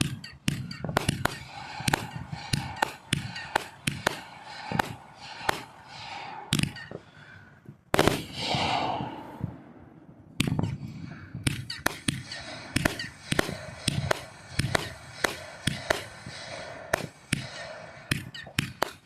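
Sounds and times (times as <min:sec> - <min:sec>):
fireworks bangs: 0:00.0 - 0:05.9, 0:07.9 - 0:09.6, 0:11.8 - 0:17.5.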